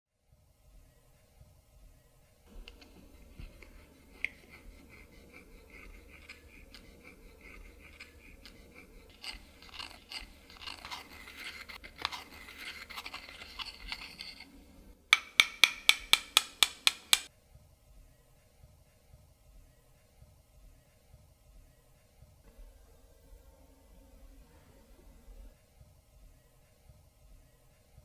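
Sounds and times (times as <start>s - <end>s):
clicking and crackling handling: 2.5s - 17.3s
run of sharp clicks: 15.2s - 17.3s.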